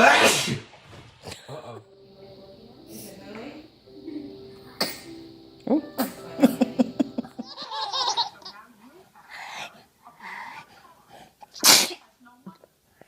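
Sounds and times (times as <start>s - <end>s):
person sneezing: 0.0s - 1.4s, 11.6s - 12.0s
person laughing: 6.0s - 8.2s.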